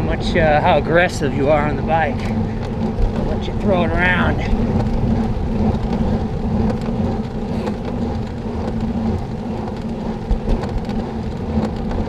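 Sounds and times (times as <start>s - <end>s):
bicycle road noise: 0.0s - 12.0s
low hum: 0.0s - 12.0s
wind on microphone: 0.0s - 12.0s.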